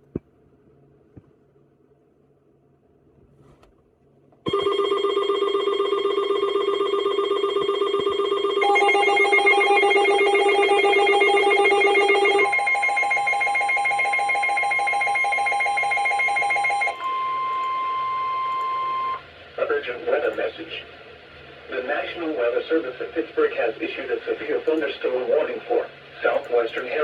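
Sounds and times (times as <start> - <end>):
steady alarm tone: 4.5 - 19.2
trilling electronic alarm: 4.5 - 19.2.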